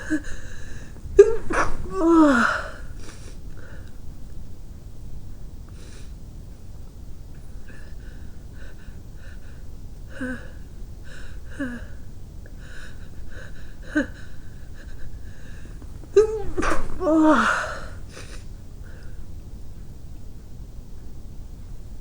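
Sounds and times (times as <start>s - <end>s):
person sneezing: 1.2s - 3.2s, 15.9s - 18.4s.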